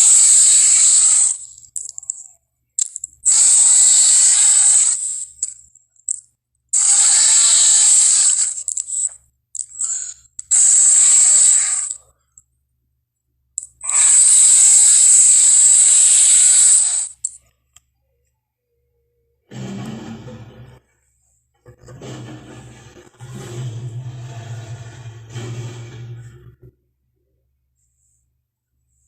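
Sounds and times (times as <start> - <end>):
monster hissing: 0.0 - 1.5, 3.3 - 5.2, 6.8 - 9.0, 9.8 - 12.0, 13.8 - 17.2.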